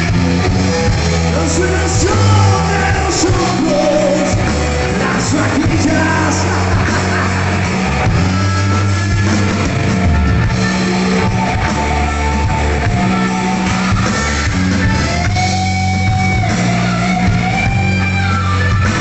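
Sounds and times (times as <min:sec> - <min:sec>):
rock band playing: 0:00.0 - 0:19.0
sung and shouted vocals: 0:01.3 - 0:08.4.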